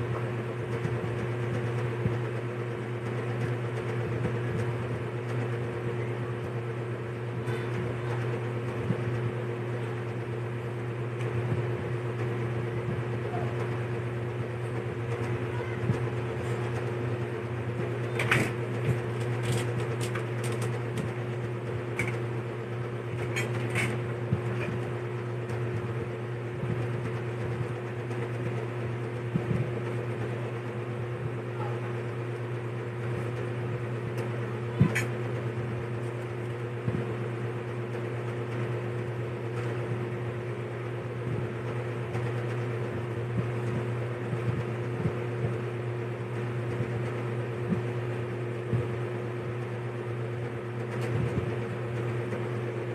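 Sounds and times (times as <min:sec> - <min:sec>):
steady mechanical hum: 0:00.0 - 0:52.9
utensils clicking and tapping: 0:19.2 - 0:21.1.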